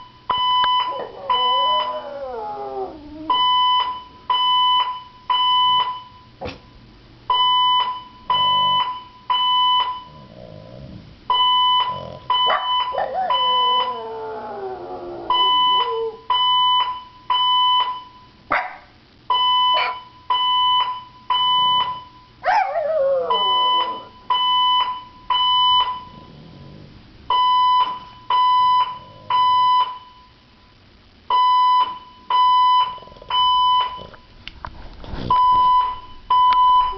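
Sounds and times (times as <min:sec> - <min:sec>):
fire alarm beeping: 0:00.0 - 0:02.0, 0:03.3 - 0:06.4, 0:07.3 - 0:10.2, 0:11.3 - 0:14.2, 0:15.3 - 0:18.4, 0:19.3 - 0:22.4, 0:23.3 - 0:26.2, 0:27.3 - 0:30.4, 0:31.3 - 0:34.1, 0:35.3 - 0:36.9
dog howling: 0:00.8 - 0:03.4, 0:11.9 - 0:16.2, 0:22.4 - 0:24.1.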